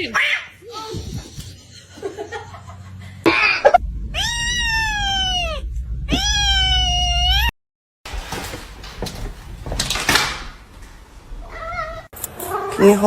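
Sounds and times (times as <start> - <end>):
cat meowing: 4.1 - 7.5, 11.4 - 12.8.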